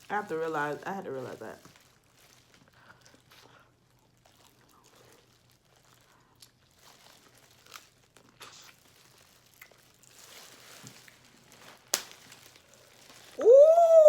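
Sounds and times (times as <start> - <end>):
crab shells crinkling and rustling: 0.0 - 13.4
crab shell cracking: 11.9 - 12.5.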